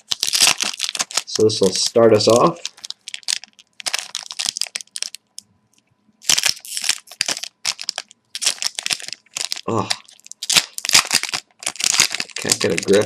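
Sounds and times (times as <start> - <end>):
wrapper crinkling and tearing: 0.0 - 5.4, 6.2 - 13.0.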